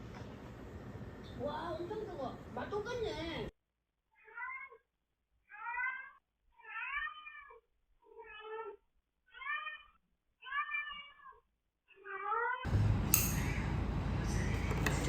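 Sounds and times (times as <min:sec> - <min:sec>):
cat meowing: 0:04.2 - 0:04.8, 0:05.5 - 0:11.4.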